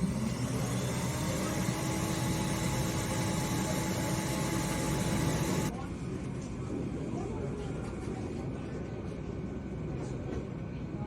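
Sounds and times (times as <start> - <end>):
motor-driven machine whirring: 0.0 - 5.7.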